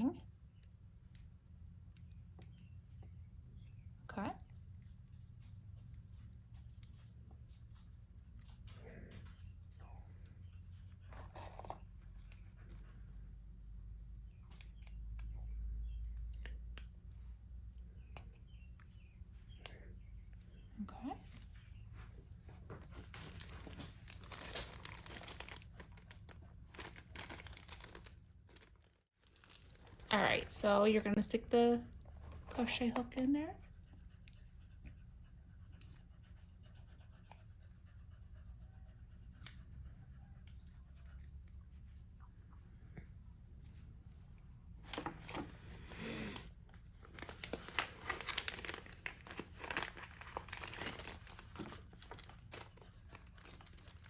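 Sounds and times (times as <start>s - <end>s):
packaging crinkling and rustling: 22.6s - 30.7s, 46.4s - 54.0s.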